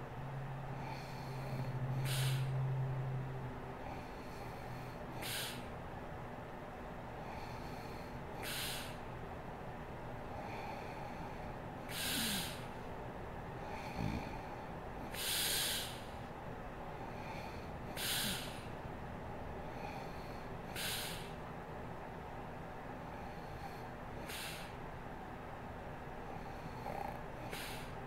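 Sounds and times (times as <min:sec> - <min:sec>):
woman breathing heavily: 0:00.7 - 0:02.8, 0:03.8 - 0:05.8, 0:07.0 - 0:09.2, 0:10.2 - 0:18.9, 0:19.5 - 0:21.6, 0:22.9 - 0:25.0, 0:26.2 - 0:28.0
short low snort: 0:02.0 - 0:02.5, 0:11.9 - 0:12.7, 0:13.8 - 0:14.4, 0:18.0 - 0:18.7, 0:26.9 - 0:28.0.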